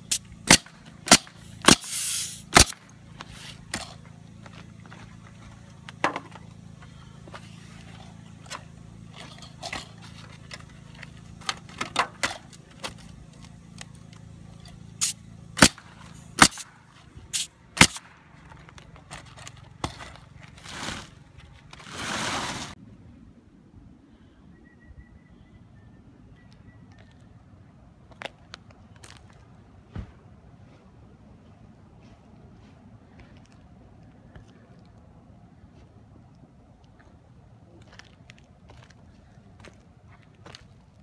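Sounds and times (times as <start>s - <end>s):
short scraping noises: 1.3s - 4.0s, 19.9s - 22.8s.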